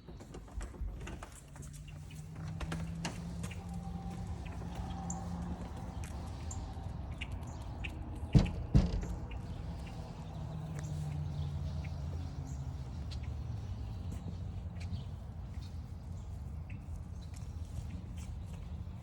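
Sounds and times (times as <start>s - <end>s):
loud knocks: 8.3s - 9.6s.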